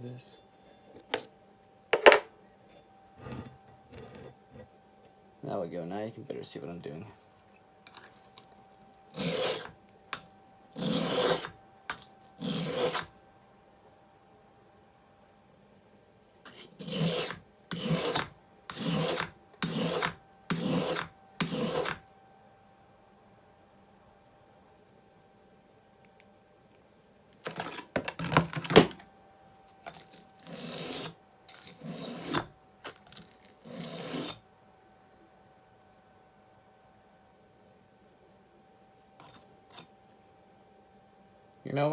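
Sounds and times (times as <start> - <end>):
blade scraping on whetstone: 9.1 - 9.8, 10.8 - 13.1, 16.5 - 22.0, 29.8 - 34.4, 39.2 - 40.0.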